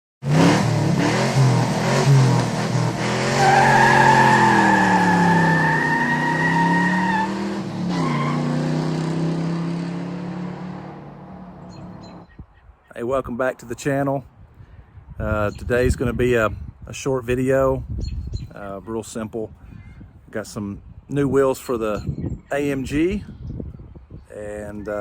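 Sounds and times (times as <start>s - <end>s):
car engine running hard: 0.2s - 12.2s
tires squealing: 0.3s - 9.6s.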